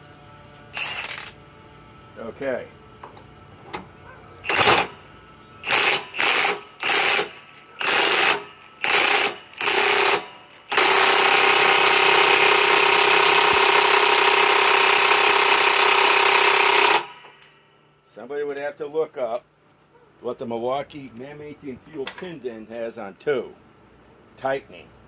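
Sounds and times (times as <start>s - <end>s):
impact wrench hammering: 5.7s - 17.3s.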